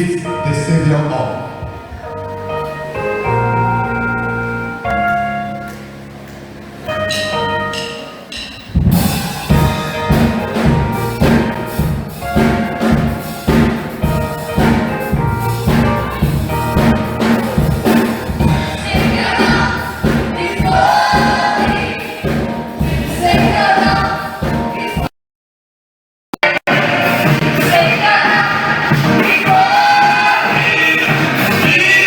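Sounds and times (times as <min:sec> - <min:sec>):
live band playing gospel music: 0:00.0 - 0:25.1, 0:26.4 - 0:32.0
drum beat with bass: 0:07.1 - 0:25.1, 0:26.4 - 0:32.0.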